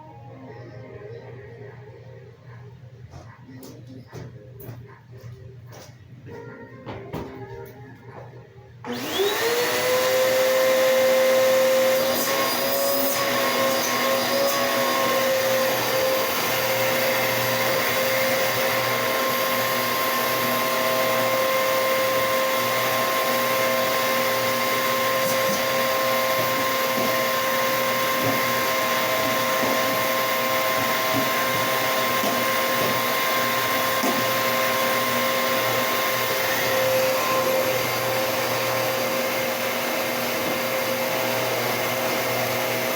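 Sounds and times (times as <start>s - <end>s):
vacuum cleaner running: 8.8s - 42.9s.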